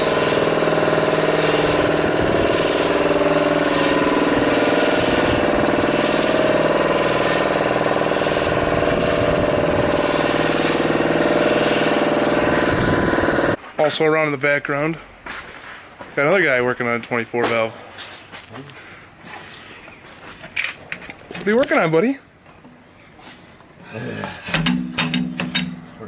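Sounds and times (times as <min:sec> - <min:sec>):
engine running steadily: 0:00.0 - 0:13.6.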